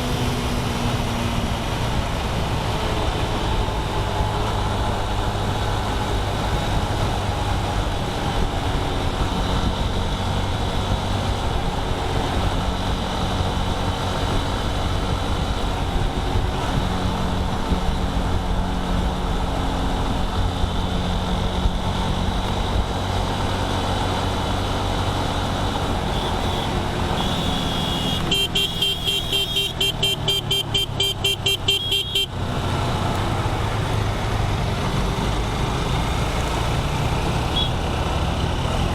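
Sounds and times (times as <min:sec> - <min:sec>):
engine and road noise: 0:00.0 - 0:38.9
vehicle horn short beeps: 0:26.1 - 0:32.3, 0:37.5 - 0:37.8.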